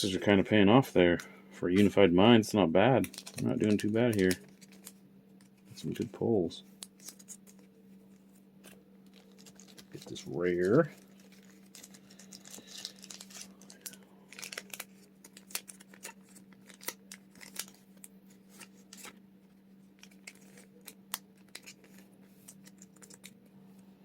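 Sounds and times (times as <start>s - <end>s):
steady low hum: 0.0s - 24.0s
plastic packaging crinkles: 3.0s - 5.6s, 6.8s - 19.2s, 19.8s - 23.4s
small clicks of handling cards: 3.0s - 23.5s.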